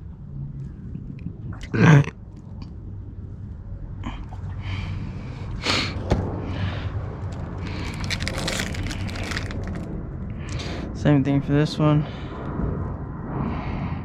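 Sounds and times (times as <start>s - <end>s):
rustling and scraping of parts: 7.3s - 9.8s.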